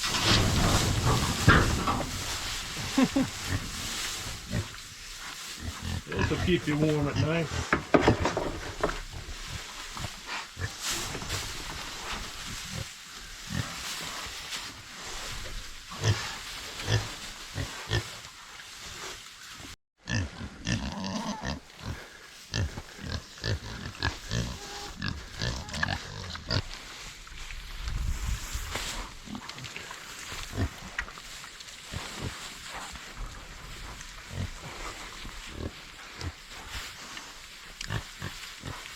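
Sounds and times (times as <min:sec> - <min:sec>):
hay rustling and crunching: 0:00.0 - 0:38.9
pigs grunting: 0:00.2 - 0:04.9, 0:05.6 - 0:10.9, 0:20.1 - 0:26.8.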